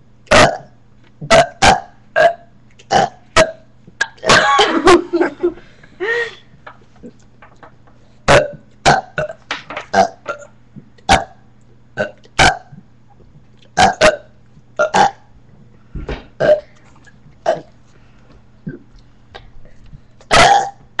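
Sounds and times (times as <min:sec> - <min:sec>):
person burping: 0:00.3 - 0:04.6, 0:08.3 - 0:10.5, 0:12.0 - 0:12.7, 0:13.8 - 0:15.2, 0:16.4 - 0:16.7, 0:17.4 - 0:17.7, 0:18.6 - 0:18.9, 0:20.3 - 0:20.8.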